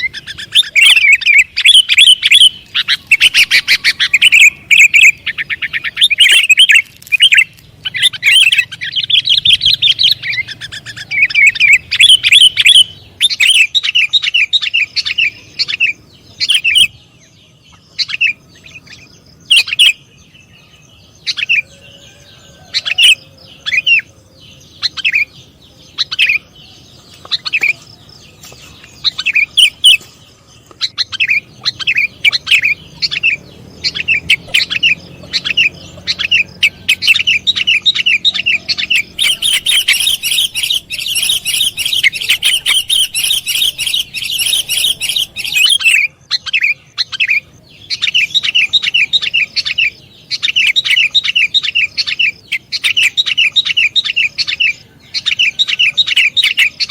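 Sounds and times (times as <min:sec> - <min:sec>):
bird calling sharp notes: 0:00.0 - 0:17.0, 0:30.8 - 0:56.9.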